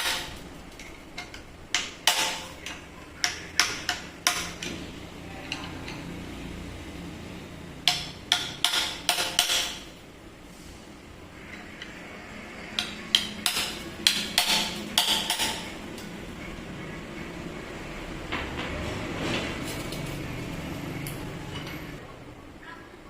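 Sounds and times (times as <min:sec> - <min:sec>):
metal tools clinking: 0:19.6 - 0:22.0.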